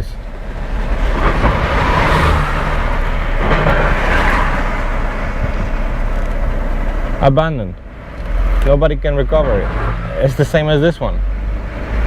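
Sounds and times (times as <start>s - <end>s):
low even rumble: 0.0s - 11.4s
tyre and road noise: 0.0s - 12.0s.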